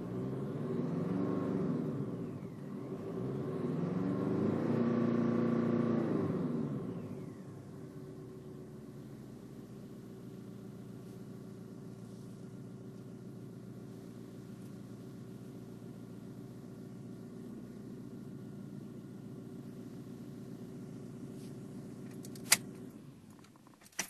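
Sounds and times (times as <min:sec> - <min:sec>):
car engine idling: 0:05.0 - 0:24.0.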